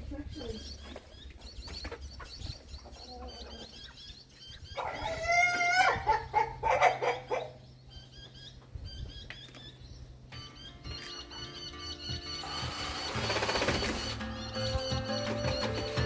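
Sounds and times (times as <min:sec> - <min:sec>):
rooster squawking: 0:04.8 - 0:07.6.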